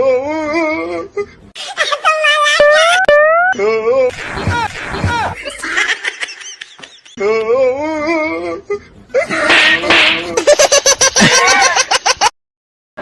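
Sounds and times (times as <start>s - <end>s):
person laughing hard: 4.1s - 7.2s, 9.2s - 12.3s.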